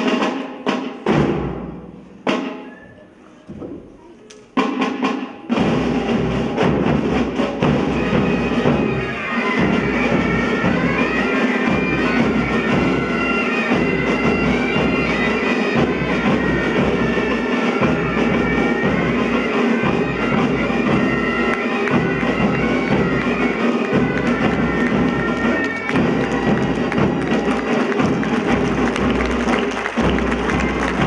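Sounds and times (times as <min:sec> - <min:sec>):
bagpipes playing a tune: 0:07.9 - 0:31.0.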